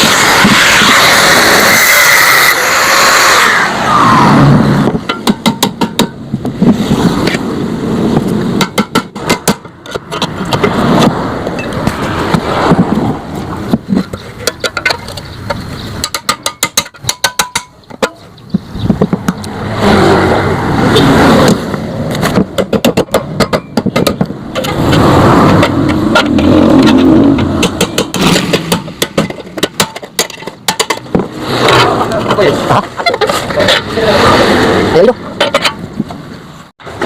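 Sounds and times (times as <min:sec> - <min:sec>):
rough continuous grinding noise: 0:00.0 - 0:37.0
rapid sharp metal knocks: 0:05.0 - 0:06.2, 0:08.6 - 0:10.8, 0:16.0 - 0:18.2, 0:22.2 - 0:24.8, 0:27.4 - 0:31.3.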